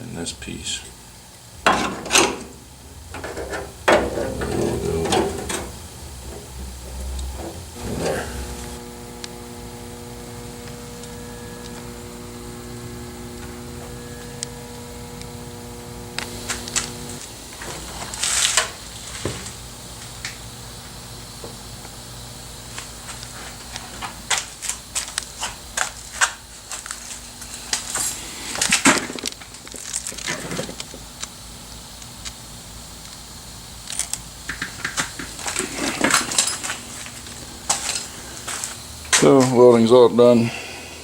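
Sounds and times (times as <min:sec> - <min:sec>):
low hum: 0:00.8 - 0:17.4.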